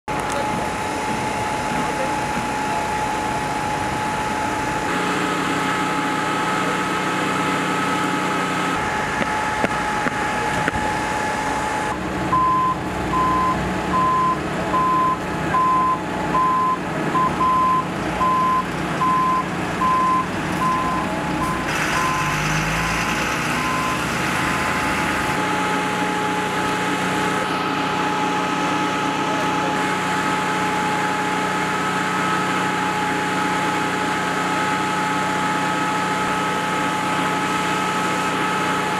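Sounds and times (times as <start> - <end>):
truck engine running: 0.0 - 38.9
constant whine: 0.1 - 38.9
reversing beeper: 0.3 - 26.6.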